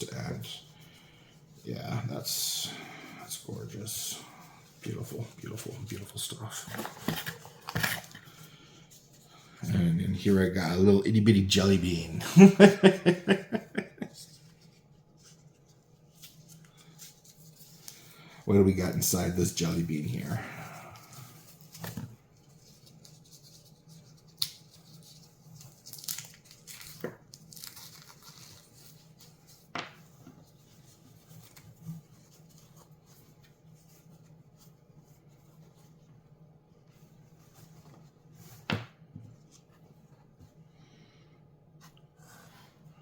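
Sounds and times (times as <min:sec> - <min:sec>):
faint steady hum: 0:00.0 - 0:43.0
wrapping rustling: 0:13.8 - 0:38.6.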